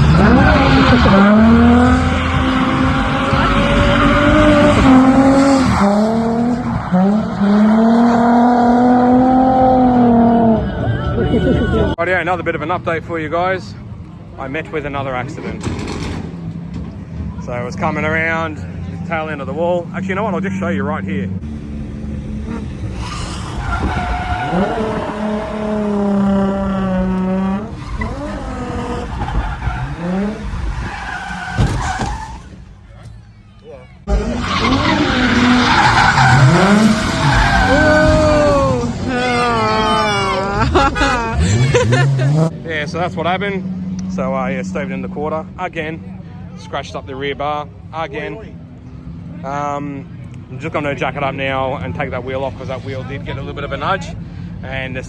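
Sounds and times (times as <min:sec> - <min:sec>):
car engine at high revs: 0:00.0 - 0:10.9, 0:15.6 - 0:32.2, 0:34.0 - 0:46.4
tyre squeal: 0:22.5 - 0:32.7
car hitting a wall: 0:27.9 - 0:32.8.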